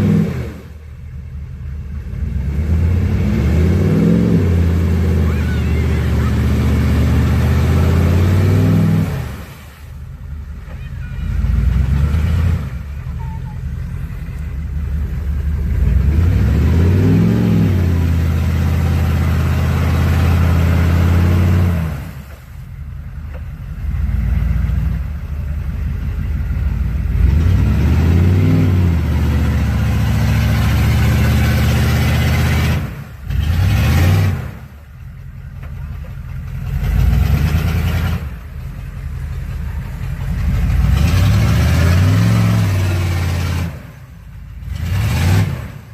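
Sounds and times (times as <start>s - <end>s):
engine revving hard: 0.0s - 0.7s, 2.1s - 9.7s, 15.6s - 22.2s, 27.0s - 34.7s, 36.6s - 38.4s, 40.3s - 44.0s, 44.6s - 45.9s.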